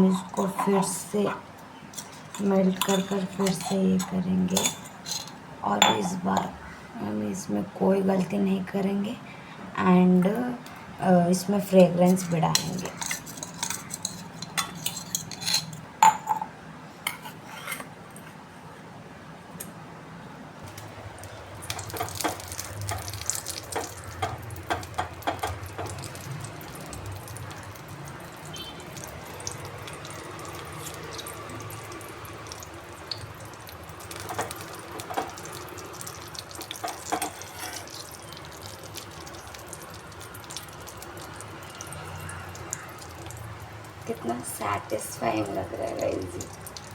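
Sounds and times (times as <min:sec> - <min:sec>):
metal spoon clinking on bowl: 0:02.0 - 0:06.5, 0:12.5 - 0:16.5.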